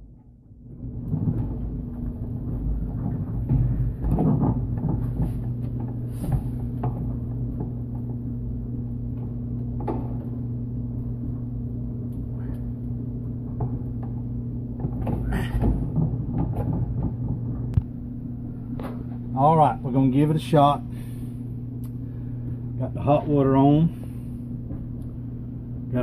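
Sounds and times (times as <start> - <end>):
steady low hum: 0.0 - 26.0
knocks and clatters of handling: 1.0 - 8.2.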